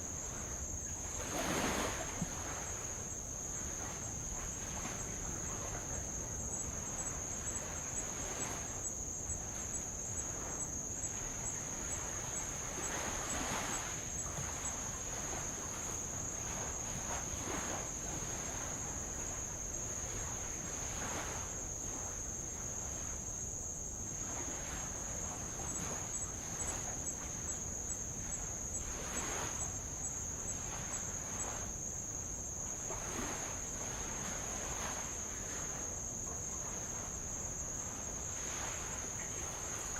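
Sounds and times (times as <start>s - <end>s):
insects droning: 0.0s - 39.9s.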